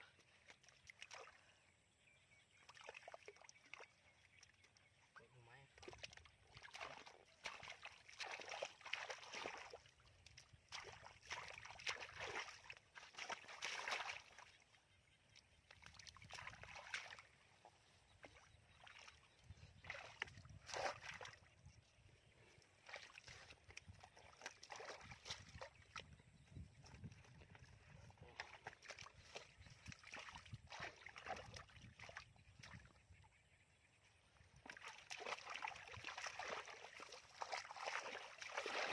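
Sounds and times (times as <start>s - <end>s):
muddy water sloshing: 0.0s - 1.7s, 2.3s - 38.9s.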